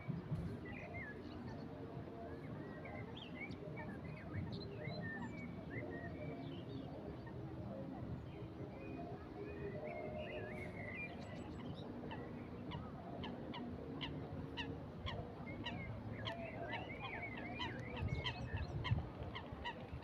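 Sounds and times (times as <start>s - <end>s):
wind noise on microphone: 18.0s - 20.0s.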